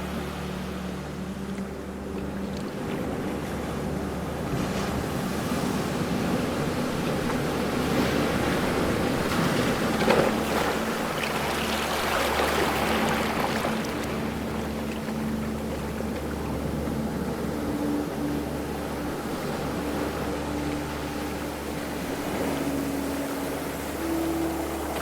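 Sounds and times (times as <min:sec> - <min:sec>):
low steady hum: 0:00.0 - 0:25.0
ocean waves washing in: 0:00.0 - 0:25.0.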